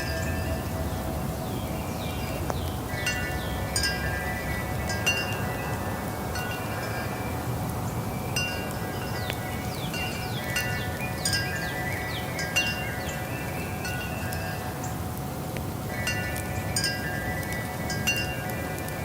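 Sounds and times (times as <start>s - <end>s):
metal wind chimes ringing: 0.0s - 1.4s, 2.9s - 7.3s, 8.2s - 14.8s, 16.0s - 18.8s.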